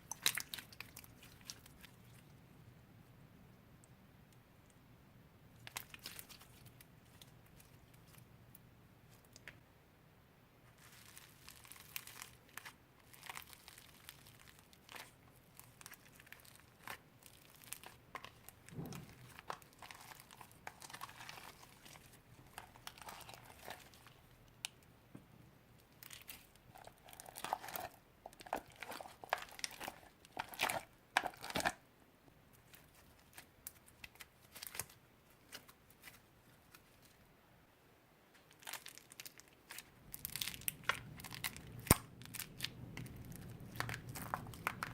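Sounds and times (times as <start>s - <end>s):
slime squished by hand: 38.6s - 44.9s.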